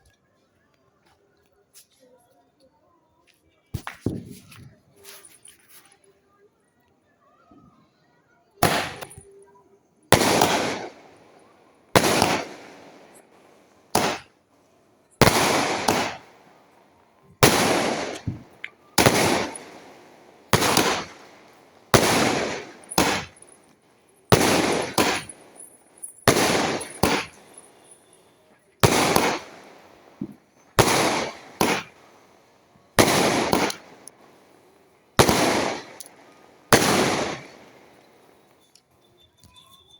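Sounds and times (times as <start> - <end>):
firework shots with hissing tail: 3.8 - 4.6, 8.6 - 9.2, 10.1 - 14.3, 15.1 - 28.2, 28.8 - 38.7.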